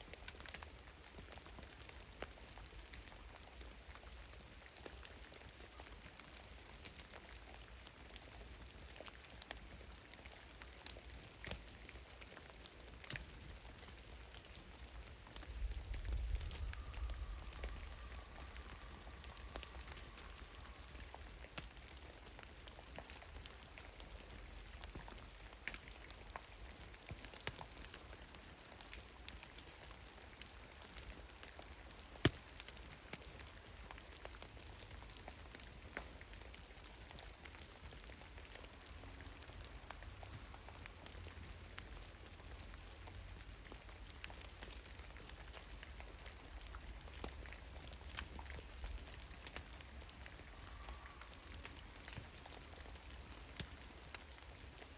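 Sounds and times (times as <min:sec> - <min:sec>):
low rumble: 0:15.4 - 0:21.6.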